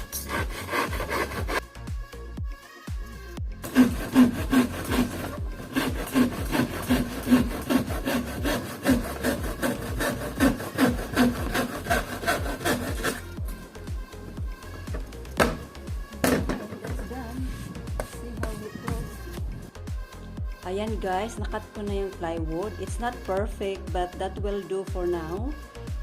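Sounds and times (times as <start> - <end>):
hand saw cutting plywood: 0.0 - 1.6, 3.6 - 13.3.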